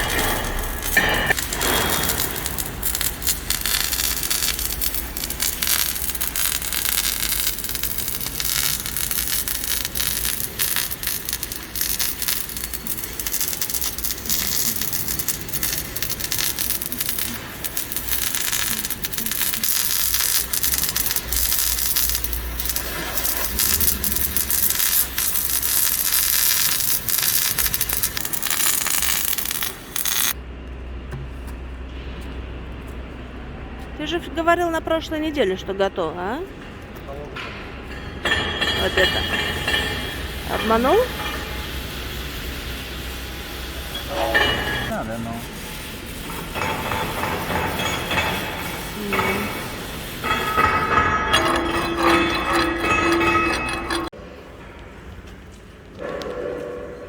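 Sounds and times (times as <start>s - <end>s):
electric welding crackling: 0.0s - 30.4s, 38.8s - 44.9s, 46.3s - 54.2s.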